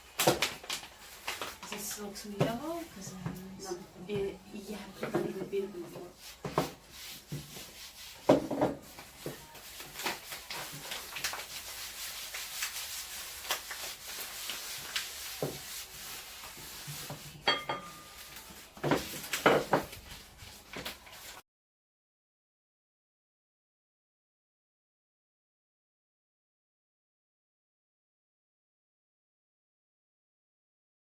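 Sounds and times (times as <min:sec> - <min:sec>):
rolling pin scraping dough: 0:01.1 - 0:21.4.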